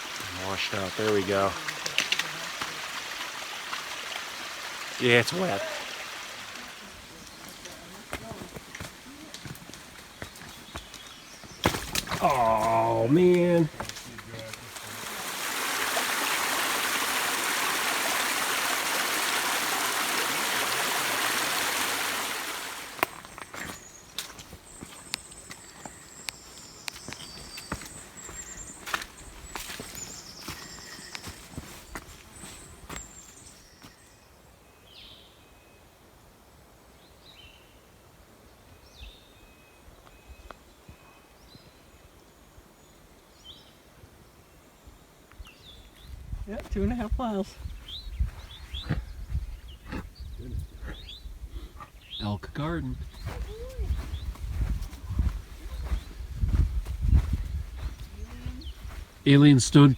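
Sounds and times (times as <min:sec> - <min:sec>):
stream running over rocks: 0:00.0 - 0:34.1
high chirping bird song: 0:23.1 - 0:34.2, 0:47.6 - 0:59.9.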